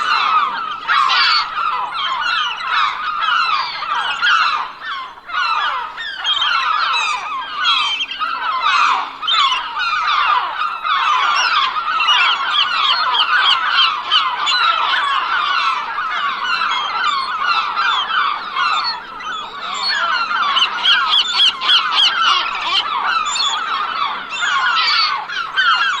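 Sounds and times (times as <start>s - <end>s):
seagulls calling: 0.0s - 26.0s.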